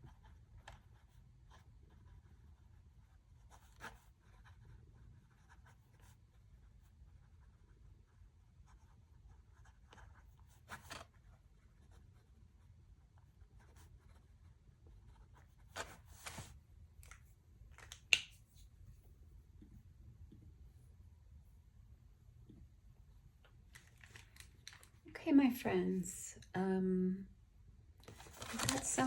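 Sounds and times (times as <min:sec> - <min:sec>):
low room hum: 0:00.0 - 0:29.0
paper rustling: 0:15.6 - 0:18.6, 0:23.7 - 0:25.0, 0:28.0 - 0:29.0.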